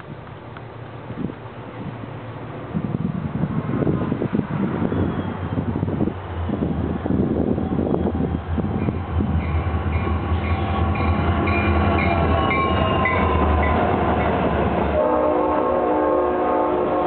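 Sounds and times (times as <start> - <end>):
diesel locomotive engine rumble: 0.0 - 17.0
locomotive bell ringing: 8.7 - 14.4
locomotive horn chord: 14.9 - 17.0.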